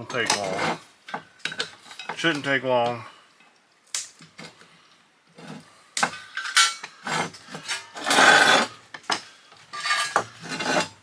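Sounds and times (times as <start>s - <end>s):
hand tools scraping metal: 0.0s - 2.6s, 5.3s - 11.0s
rasping scrape: 0.1s - 0.9s, 5.4s - 5.7s, 7.0s - 8.8s, 9.8s - 11.0s.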